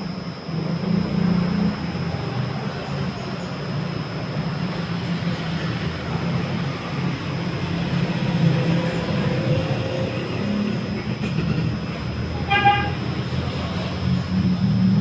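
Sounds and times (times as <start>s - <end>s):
carpet spinner motor rumble: 0.0s - 15.0s.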